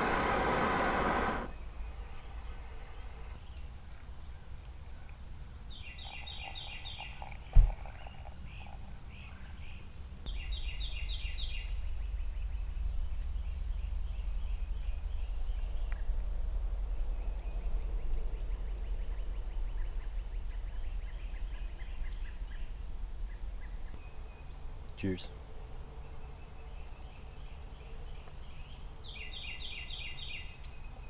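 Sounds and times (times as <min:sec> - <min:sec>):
low rumbling noise: 0:00.0 - 0:01.6.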